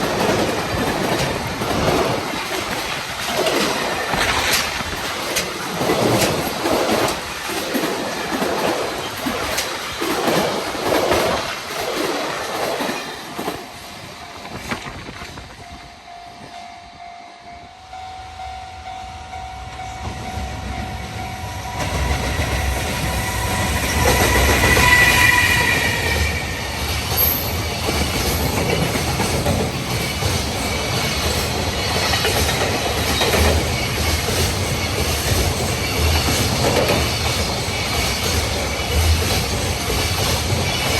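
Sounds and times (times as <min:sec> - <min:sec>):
train wheels clattering: 0:00.0 - 0:15.5, 0:20.0 - 0:40.9
train approaching: 0:00.0 - 0:40.9
train horn: 0:15.7 - 0:27.3.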